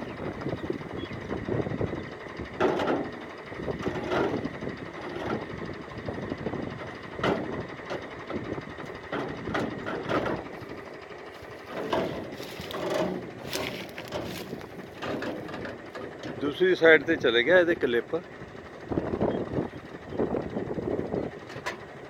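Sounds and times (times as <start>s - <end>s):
tractor engine idling: 0.0s - 22.0s
metal knocks and clanks: 2.6s - 3.2s, 7.2s - 8.1s, 9.0s - 10.7s, 11.4s - 16.4s.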